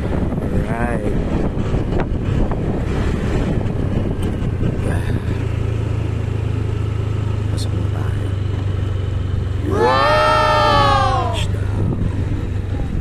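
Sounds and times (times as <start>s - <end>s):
wind buffeting microphone: 0.0s - 5.7s, 9.6s - 13.0s
vehicle engine rumble: 0.0s - 13.0s.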